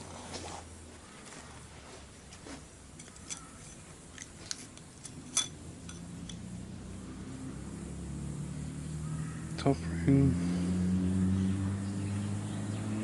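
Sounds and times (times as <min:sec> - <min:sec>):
metallic clicks and clinks: 0:03.0 - 0:06.5.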